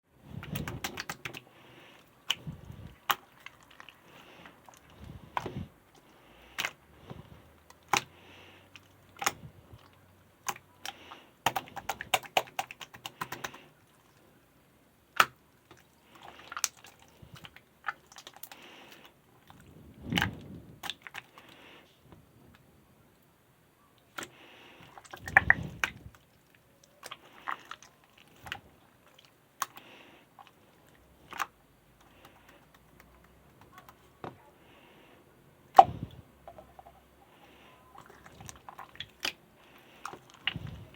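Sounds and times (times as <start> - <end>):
sharp clicks and taps: 10.5 - 13.6.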